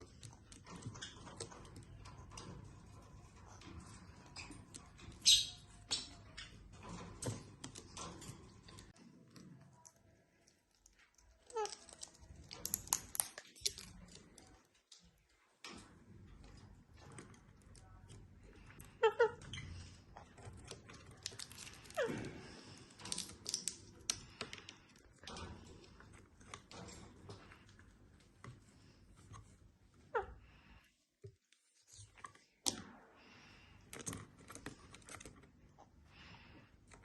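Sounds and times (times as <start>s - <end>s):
bird chirp: 5.2s - 6.6s.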